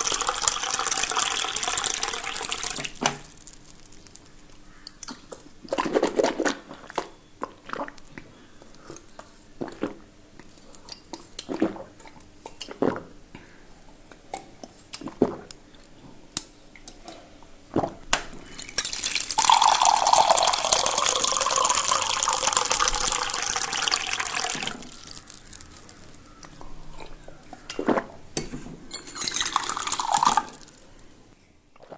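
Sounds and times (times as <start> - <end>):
water rushing and pouring: 0.0 - 3.5, 18.7 - 26.2, 29.1 - 30.9
water dripping: 0.0 - 5.5, 18.6 - 27.8, 28.4 - 31.1.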